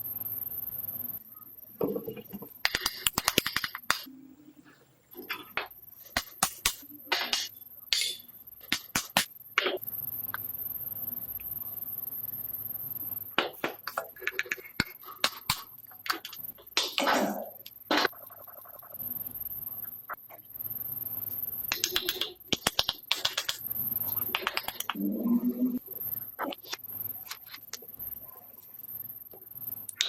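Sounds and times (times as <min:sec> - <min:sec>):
clicks and knocks on metal: 0:05.3 - 0:09.8.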